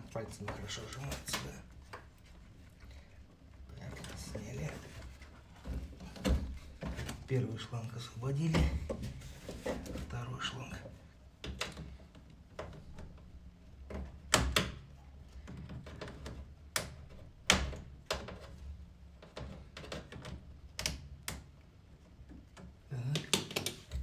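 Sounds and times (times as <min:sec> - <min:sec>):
plastic clicks and knocks: 0:11.4 - 0:21.5, 0:22.2 - 0:24.0.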